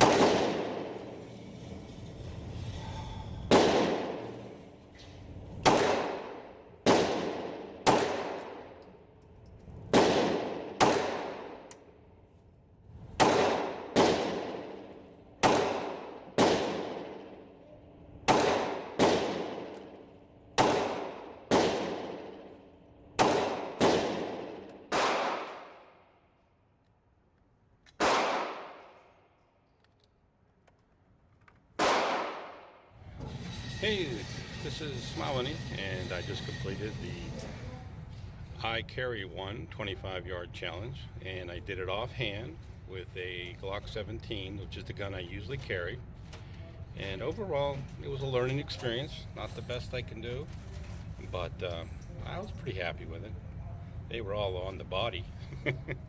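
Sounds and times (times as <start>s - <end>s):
pistol shots with echo: 0.0s - 1.0s, 3.5s - 4.4s, 5.6s - 8.8s, 9.9s - 11.7s, 13.2s - 17.6s, 18.2s - 20.0s, 20.6s - 22.6s, 23.2s - 26.0s, 28.0s - 29.0s, 31.8s - 32.8s.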